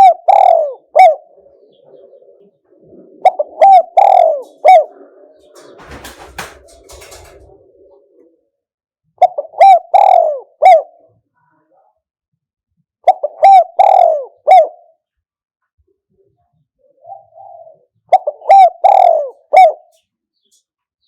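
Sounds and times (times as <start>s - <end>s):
dove cooing: 0.0s - 8.6s, 9.2s - 11.2s, 13.1s - 14.9s, 16.8s - 20.0s.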